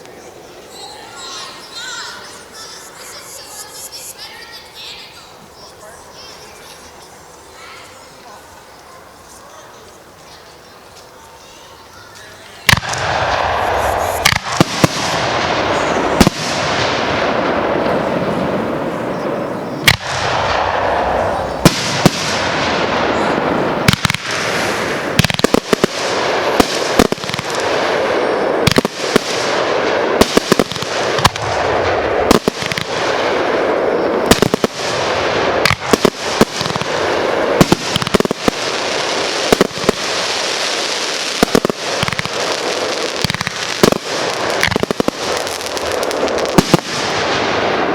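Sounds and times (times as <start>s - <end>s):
firework crackling hiss: 0.0s - 47.9s
firework bangs: 11.1s - 47.9s.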